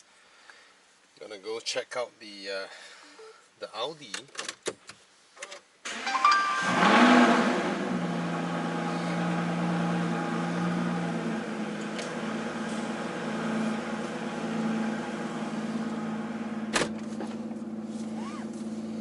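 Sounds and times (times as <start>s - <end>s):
car engine idling: 5.9s - 19.0s.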